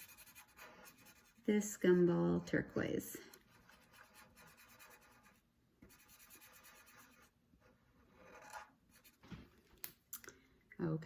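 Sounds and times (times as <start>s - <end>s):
colouring strokes on paper: 0.0s - 2.3s, 3.4s - 9.2s.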